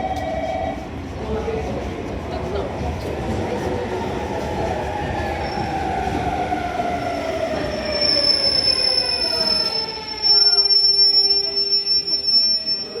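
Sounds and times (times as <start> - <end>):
high-pitched brake squeal: 7.7 - 13.0.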